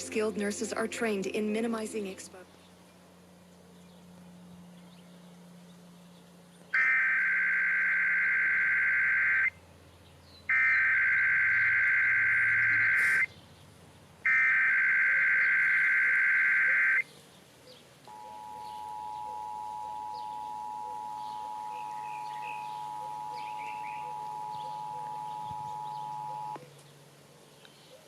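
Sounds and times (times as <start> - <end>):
screeching digital data bursts: 18.1 - 26.6
two-tone attention signal: 18.1 - 26.6.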